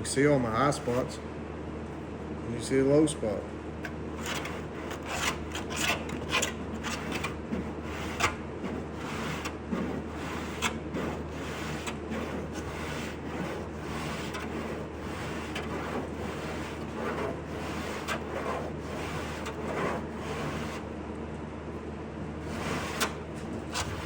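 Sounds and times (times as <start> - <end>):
hand file scraping body filler: 4.2 - 20.9, 22.4 - 24.0.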